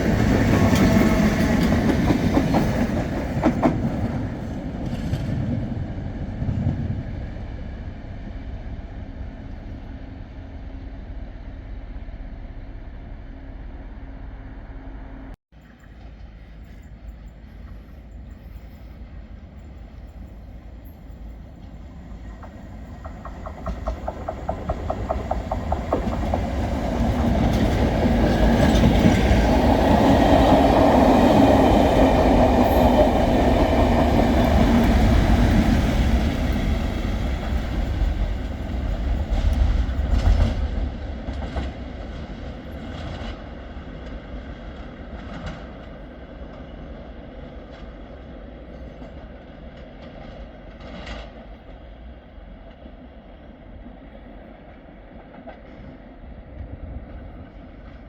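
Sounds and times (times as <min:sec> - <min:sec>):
diesel locomotive passing: 0:00.0 - 0:58.0
wheels clicking over rail joints: 0:21.6 - 0:46.8.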